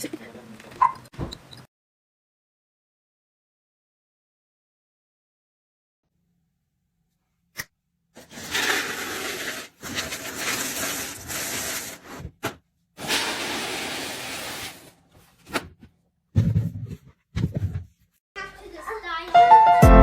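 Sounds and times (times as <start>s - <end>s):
rubbing and rustling: 8.2s - 12.4s.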